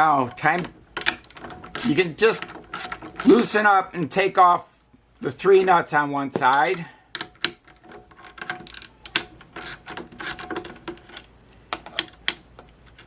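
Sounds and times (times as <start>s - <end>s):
socket ratchet clicking: 8.2s - 10.7s.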